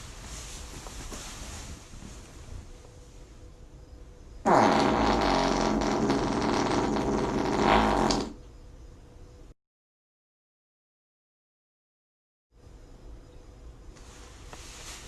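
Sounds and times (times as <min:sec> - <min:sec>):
long loud fart: 0:04.4 - 0:08.4.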